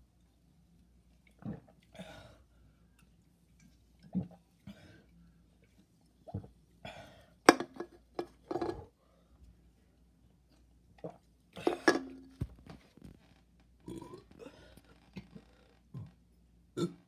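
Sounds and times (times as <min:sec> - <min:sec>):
person burping: 0:13.9 - 0:14.6, 0:16.8 - 0:17.0.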